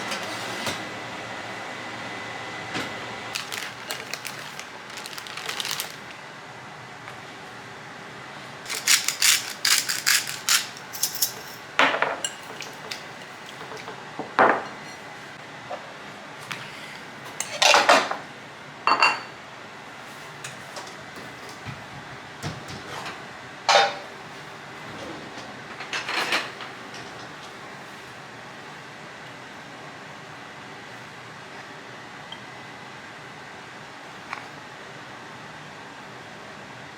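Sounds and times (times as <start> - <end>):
dishes and utensils clinking: 8.7 - 13.9, 23.7 - 24.1.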